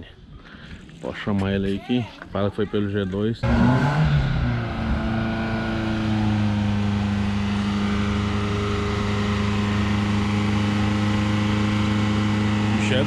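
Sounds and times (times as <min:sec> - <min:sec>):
vehicle engine droning: 0:03.4 - 0:13.0.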